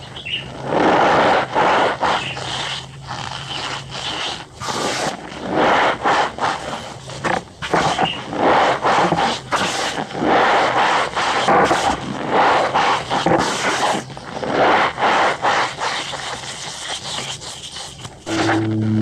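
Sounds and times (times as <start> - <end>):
cornstarch squeaking when squeezed: 15.6 - 18.3.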